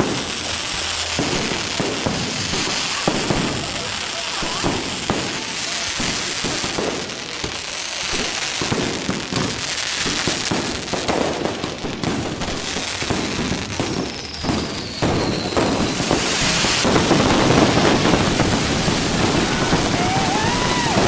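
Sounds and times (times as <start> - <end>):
fireworks crackling and popping: 0.0 - 21.0
falling firework whistle: 8.1 - 21.0.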